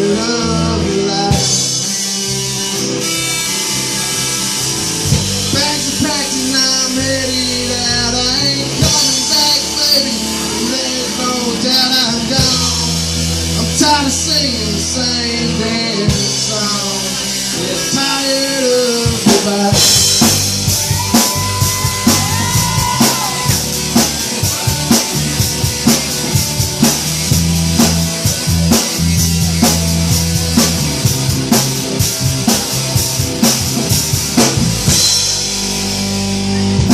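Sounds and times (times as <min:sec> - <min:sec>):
bass: 0:00.0 - 0:36.9
sliding guitar lead lines: 0:00.0 - 0:36.9
drum kit beat with cymbals: 0:00.9 - 0:36.9.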